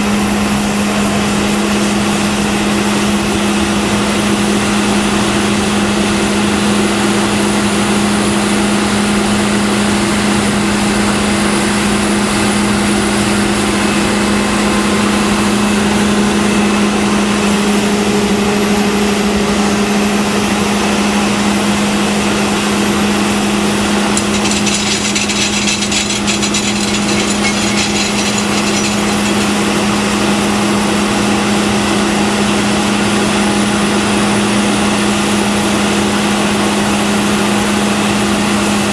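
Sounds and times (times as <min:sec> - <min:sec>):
fast rattle: 0:23.9 - 0:30.4.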